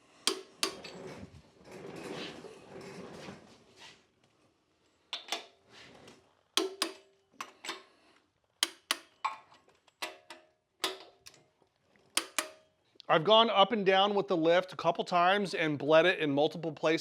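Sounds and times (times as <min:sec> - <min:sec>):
sharp metallic clicks: 0:00.3 - 0:00.8, 0:06.6 - 0:07.1, 0:08.6 - 0:09.2, 0:12.2 - 0:12.6.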